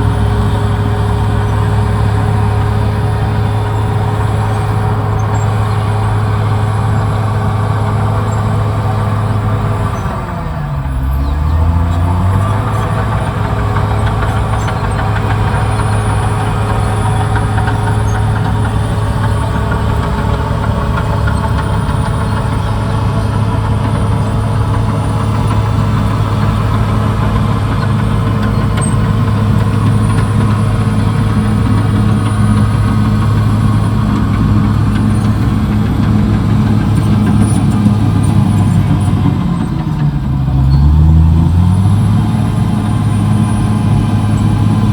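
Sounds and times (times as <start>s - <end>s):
bulldozer diesel engine running: 0.0s - 44.9s.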